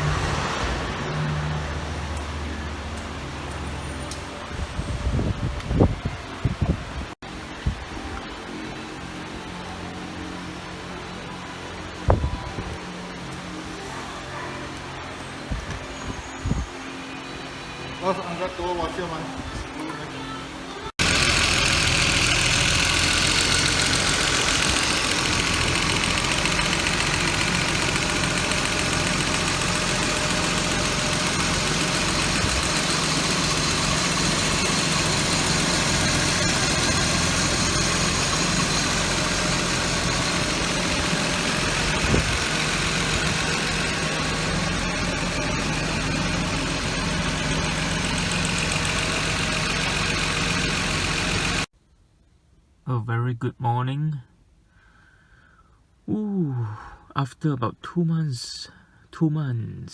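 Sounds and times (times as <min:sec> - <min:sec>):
car engine idling: 0:21.0 - 0:51.7.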